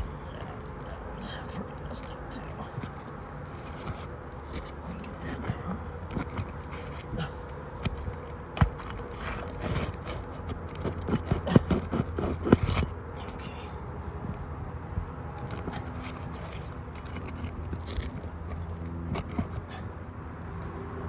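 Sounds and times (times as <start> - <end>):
metal pry tool scraping and clicking: 7.8 - 13.4.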